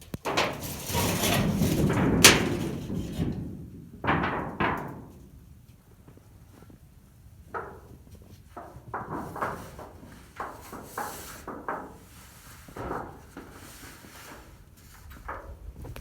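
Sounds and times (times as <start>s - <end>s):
sheet metal scraping and knocking: 0.0s - 5.7s, 7.5s - 14.6s.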